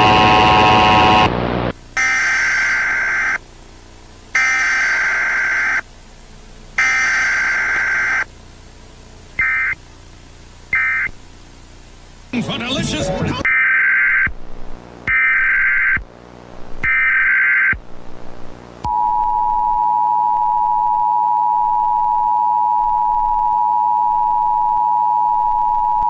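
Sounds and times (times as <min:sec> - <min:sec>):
data bursts: 0:12.4 - 0:13.5.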